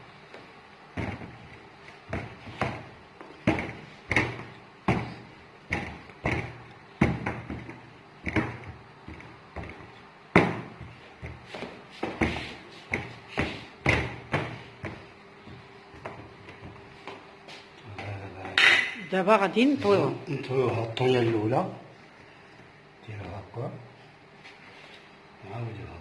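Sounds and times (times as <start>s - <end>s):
rolling pin knocking on worktop: 1.0s - 16.8s.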